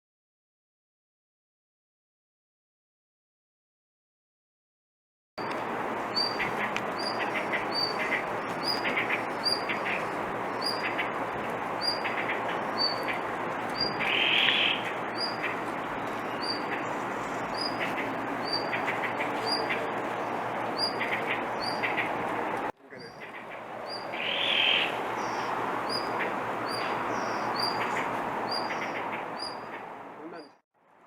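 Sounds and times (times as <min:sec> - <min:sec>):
steady background hiss: 0:05.4 - 0:30.4
bird chirping high: 0:06.0 - 0:22.3, 0:23.0 - 0:30.6.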